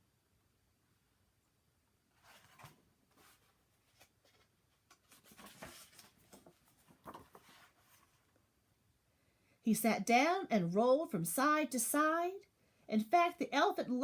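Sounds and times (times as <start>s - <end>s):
paper rustling and scraping: 2.2s - 8.3s.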